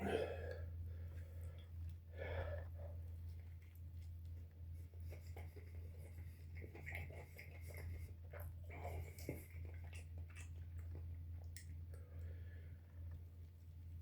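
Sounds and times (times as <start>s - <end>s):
low steady hum: 0.0s - 14.0s
sandwich being chewed: 2.6s - 12.1s.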